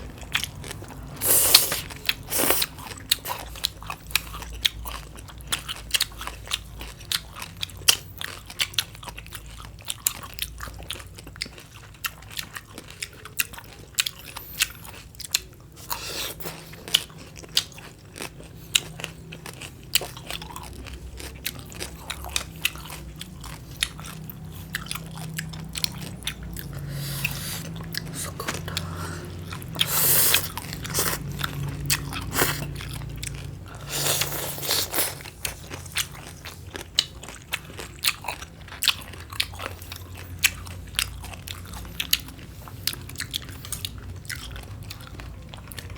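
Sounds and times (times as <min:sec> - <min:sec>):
chewing crisp food: 0:00.0 - 0:45.9.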